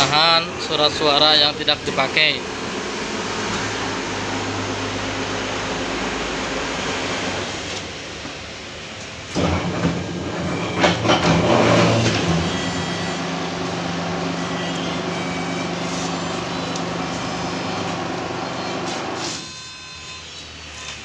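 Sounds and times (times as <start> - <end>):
paper shredder motor humming: 9.4 - 19.5
paper crackling in shredder: 11.0 - 19.4.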